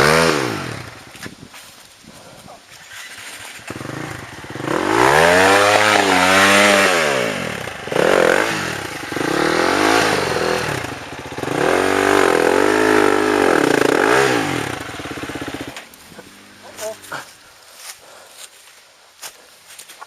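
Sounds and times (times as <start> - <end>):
dirt bike engine revving: 0.0 - 1.1, 2.7 - 17.4.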